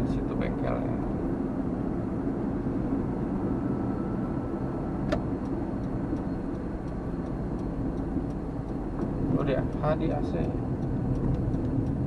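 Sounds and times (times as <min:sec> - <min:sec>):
vehicle engine and road noise: 0:00.0 - 0:12.0
sharp click: 0:05.1 - 0:09.2
faint ticking: 0:05.1 - 0:12.0.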